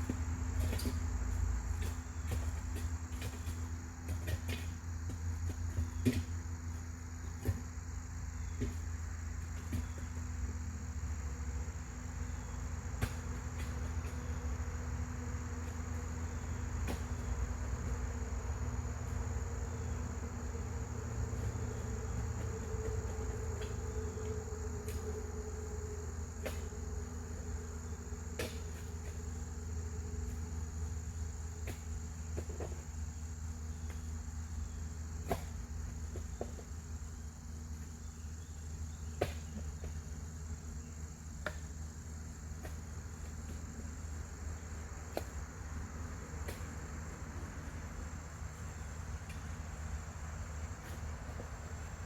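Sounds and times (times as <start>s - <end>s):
low steady hum: 0.0s - 52.0s.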